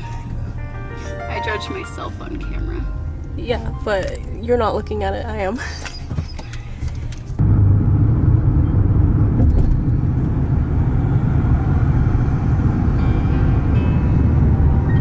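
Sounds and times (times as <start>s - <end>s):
loud low rumble: 7.4s - 15.0s.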